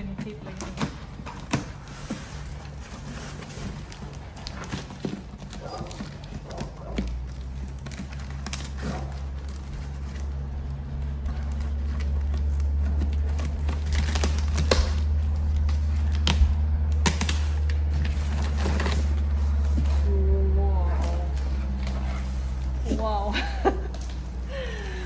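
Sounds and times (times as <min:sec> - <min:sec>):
cardboard crackles and taps: 0:00.0 - 0:20.1
low rumble: 0:00.0 - 0:25.0
packing tape pulled off box: 0:00.4 - 0:20.1.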